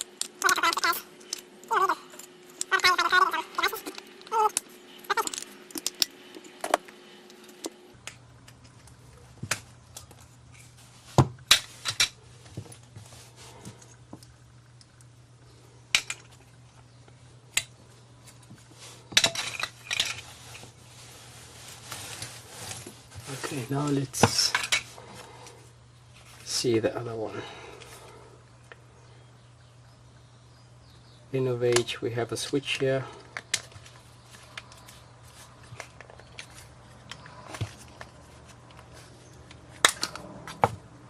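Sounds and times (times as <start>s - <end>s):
small parts clicking and clattering: 0.0s - 10.8s, 15.9s - 16.9s, 19.1s - 20.7s, 33.0s - 40.7s.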